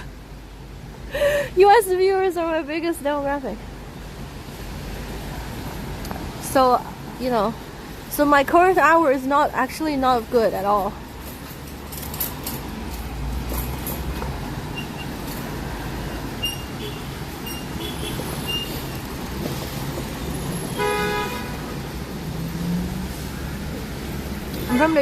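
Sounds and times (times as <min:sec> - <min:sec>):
traffic rumble: 0:00.0 - 0:25.0
vehicle horn toot: 0:16.4 - 0:18.8, 0:20.7 - 0:21.6, 0:24.7 - 0:25.0.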